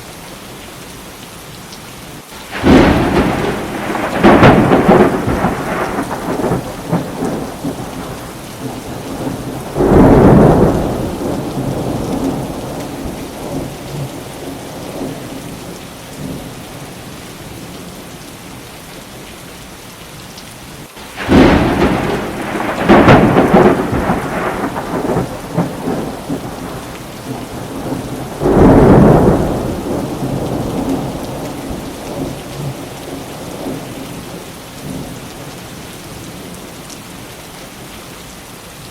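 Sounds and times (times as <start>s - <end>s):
heavy rain: 0.0s - 38.9s
thunder crashing: 2.5s - 13.9s, 21.2s - 33.8s.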